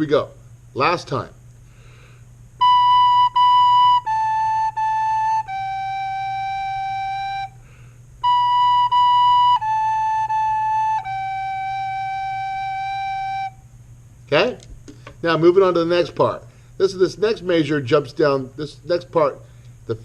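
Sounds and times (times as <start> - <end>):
soprano recorder playing: 2.6 - 7.6, 8.2 - 13.6.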